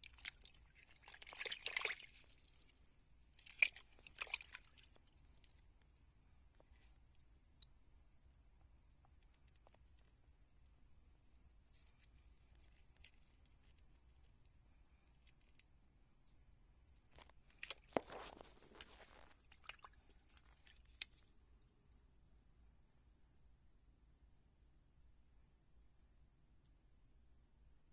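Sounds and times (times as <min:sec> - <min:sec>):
scraping or crunching: 0:17.2 - 0:21.0.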